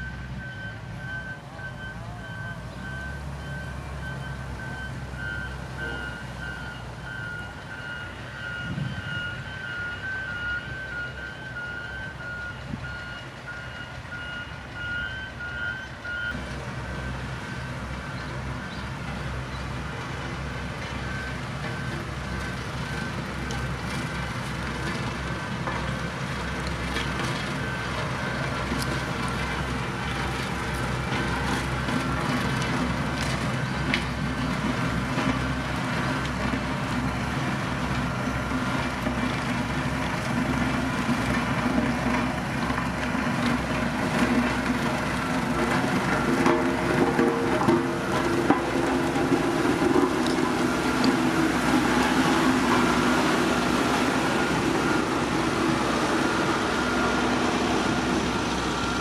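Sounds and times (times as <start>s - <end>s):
reversing alarm beeping: 0.0s - 19.0s, 19.6s - 23.6s, 44.3s - 59.0s
heavy machinery diesel engine: 0.0s - 59.0s.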